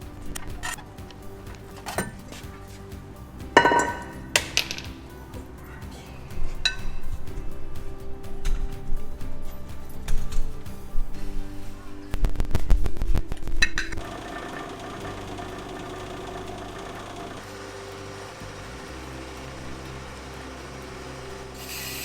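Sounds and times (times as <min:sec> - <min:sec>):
brake lathe motor humming: 0:14.0 - 0:22.0.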